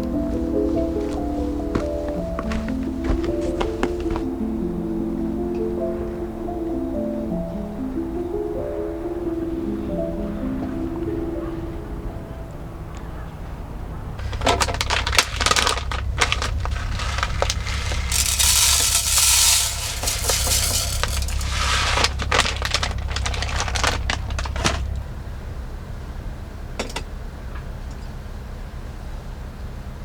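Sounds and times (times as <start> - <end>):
hard objects clinking and knocking: 14.2 - 24.9.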